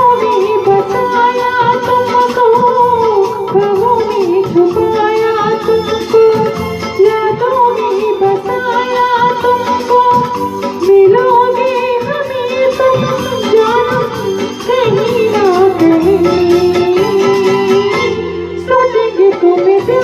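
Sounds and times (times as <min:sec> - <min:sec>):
instrumental accompaniment: 0:00.0 - 0:20.0
high voice singing: 0:07.0 - 0:20.0.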